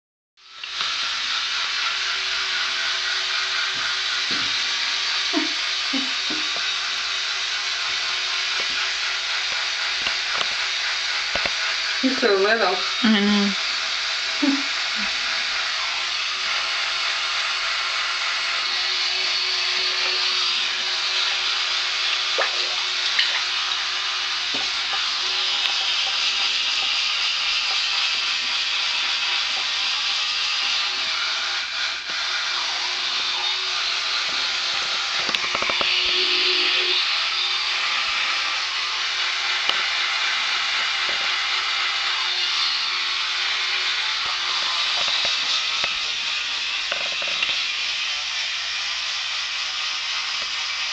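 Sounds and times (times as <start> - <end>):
electric toothbrush hum: 0.4 - 50.9.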